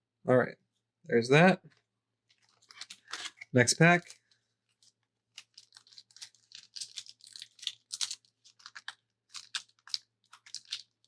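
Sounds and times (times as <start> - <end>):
wrapper crinkling and tearing: 2.3 - 11.0.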